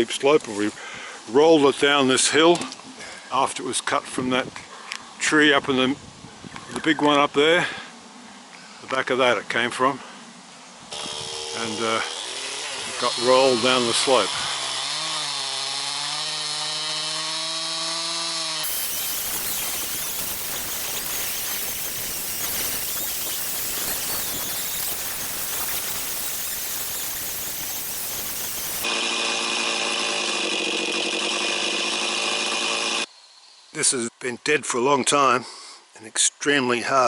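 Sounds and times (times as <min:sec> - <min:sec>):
chainsaw cutting through log: 0:10.9 - 0:33.1
chainsaw engine running: 0:10.9 - 0:33.1.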